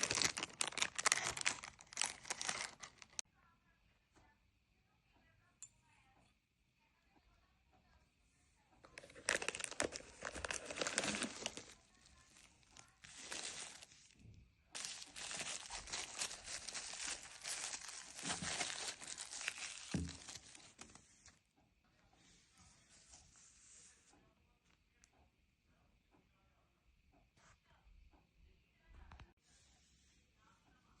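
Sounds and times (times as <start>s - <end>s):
packaging crumpling and tearing: 0.0s - 3.2s, 9.0s - 14.2s, 14.8s - 21.0s.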